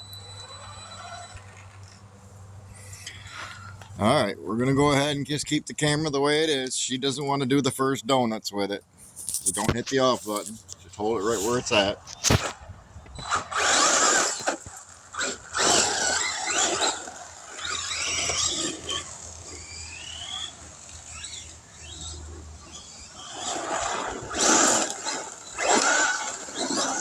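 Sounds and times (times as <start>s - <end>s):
rc car motor revving: 0.1s - 2.1s, 2.8s - 4.0s, 9.4s - 27.0s.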